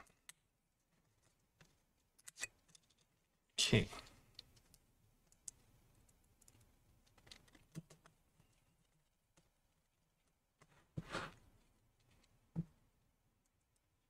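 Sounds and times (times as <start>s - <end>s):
laptop parts clicking and tapping: 4.3s - 8.6s.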